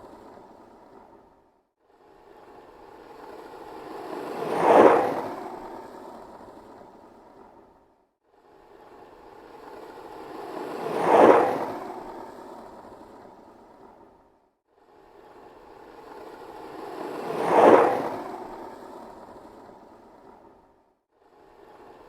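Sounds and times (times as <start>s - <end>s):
skateboard rolling past: 3.1s - 6.2s, 9.5s - 14.0s, 16.1s - 20.5s.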